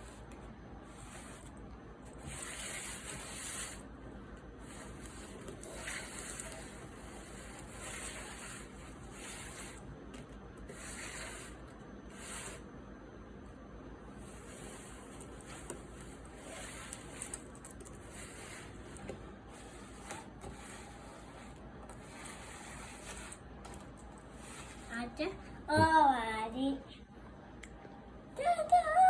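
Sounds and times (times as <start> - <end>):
faint rustling of plastic toy pieces: 4.6 - 12.6, 14.2 - 25.2.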